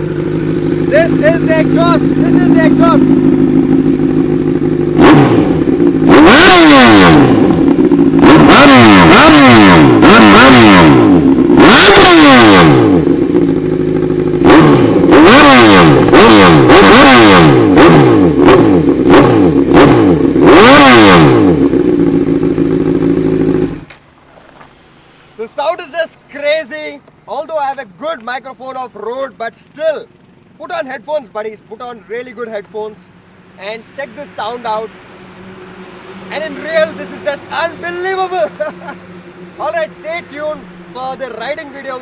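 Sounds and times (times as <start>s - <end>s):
motorcycle engine revving: 0.0s - 24.0s, 30.1s - 30.7s, 33.9s - 42.0s.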